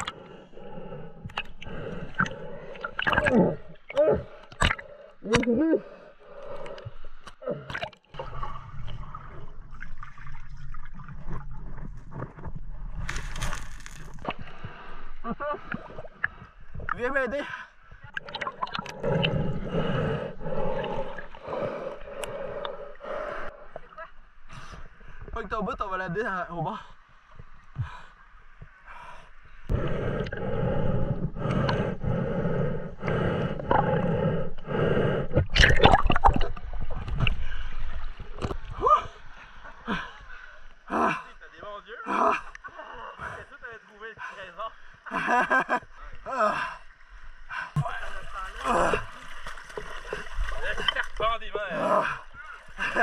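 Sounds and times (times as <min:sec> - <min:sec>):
water sloshing and splashing: 0:01.3 - 0:15.0, 0:15.6 - 0:25.4, 0:35.4 - 0:40.9, 0:46.8 - 0:53.0
rasping breaths through a snorkel: 0:18.7 - 0:23.8, 0:28.9 - 0:35.7
rush of water: 0:47.8 - 0:53.0.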